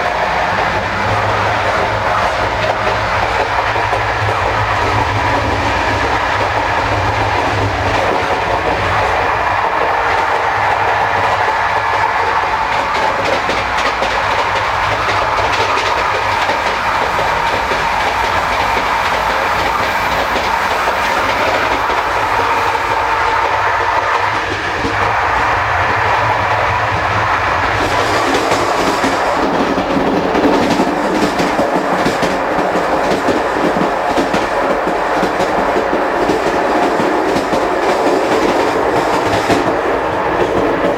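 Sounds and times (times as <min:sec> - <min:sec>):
train coach rumble and rattle: 0:00.0 - 0:40.9.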